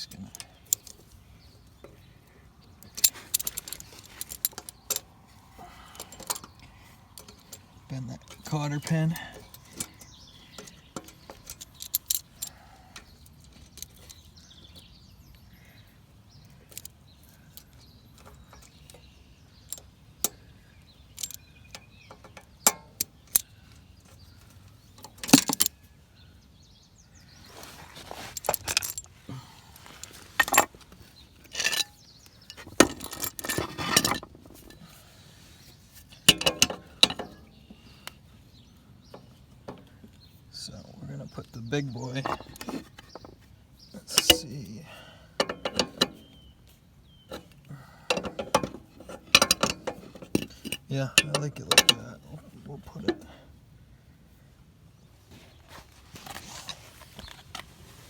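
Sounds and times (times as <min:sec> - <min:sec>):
metal hand tools clinking: 0:02.9 - 0:05.0, 0:07.2 - 0:12.6, 0:25.1 - 0:25.7, 0:30.0 - 0:30.7, 0:31.4 - 0:34.8, 0:42.0 - 0:43.2, 0:44.1 - 0:44.6.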